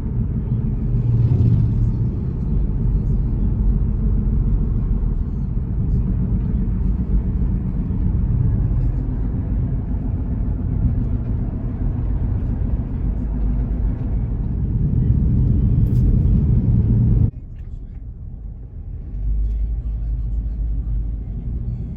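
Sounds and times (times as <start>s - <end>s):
loud low rumble: 0.0s - 21.9s.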